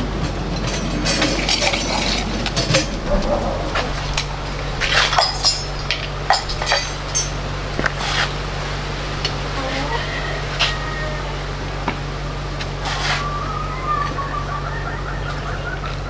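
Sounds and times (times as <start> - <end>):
metal utensils clinking on dishes: 0.0 - 11.0
steady low hum: 0.0 - 16.0.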